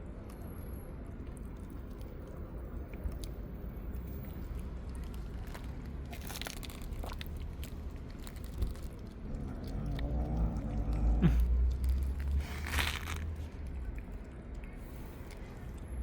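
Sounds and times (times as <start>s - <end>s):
steady low rumble: 3.7s - 16.0s
cat crunching food: 4.0s - 15.8s.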